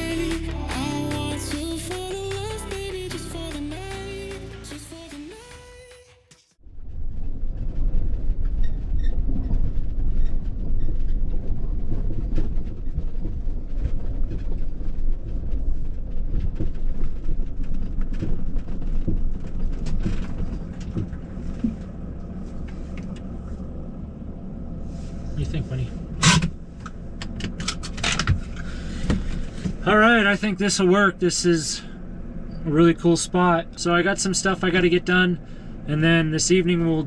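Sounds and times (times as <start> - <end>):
van driving on rocky dirt road: 6.8 - 37.0
clattering knocks and rattles: 7.9 - 22.0.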